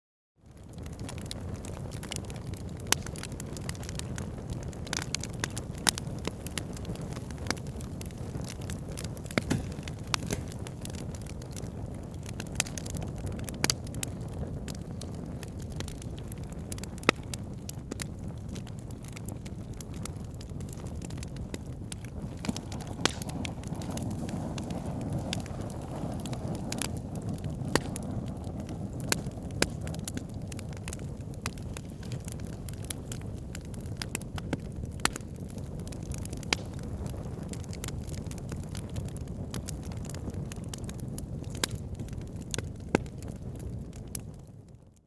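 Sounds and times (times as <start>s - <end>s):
fire crackling in a fireplace: 0.4s - 45.0s.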